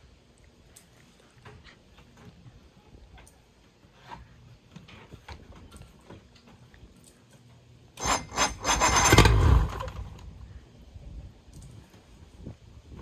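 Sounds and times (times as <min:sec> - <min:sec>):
boat engine starter cranking: 0:08.0 - 0:10.3.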